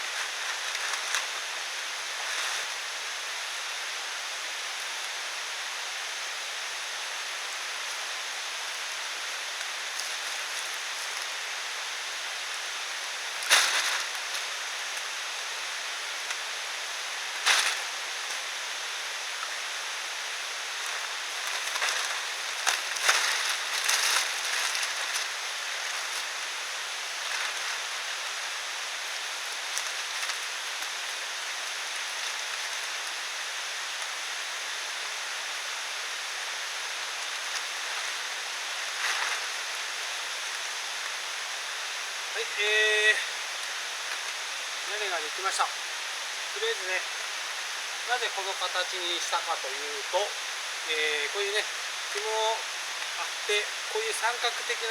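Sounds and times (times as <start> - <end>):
knocks and rustles of tarp: 0.0 - 2.9, 13.3 - 15.0, 17.4 - 18.5, 20.7 - 33.2, 37.1 - 40.7
rain in forest: 0.0 - 54.9.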